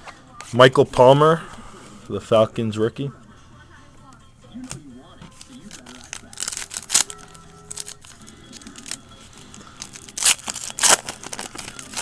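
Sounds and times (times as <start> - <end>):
foil wrapper crinkling: 5.4 - 12.0
foil wrapper ripping: 5.4 - 12.0.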